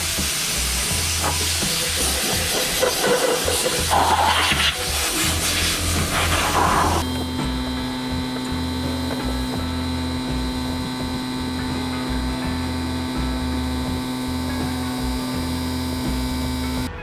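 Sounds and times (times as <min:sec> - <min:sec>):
bench grinder motor hum: 0:00.0 - 0:17.0.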